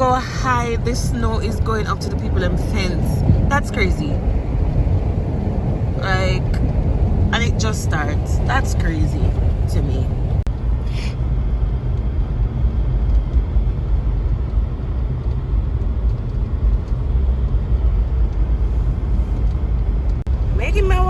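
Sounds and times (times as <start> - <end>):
car road and engine rumble: 0.0 - 21.0.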